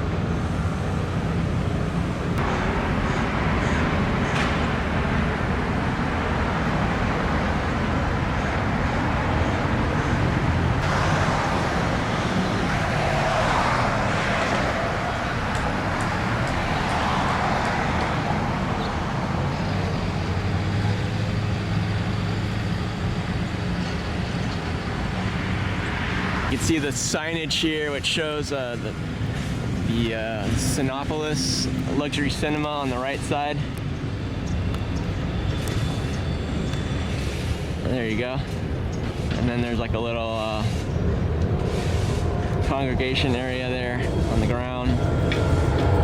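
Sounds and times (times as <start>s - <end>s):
cars passing: 0.0s - 46.0s
heavier engine hum: 0.0s - 46.0s.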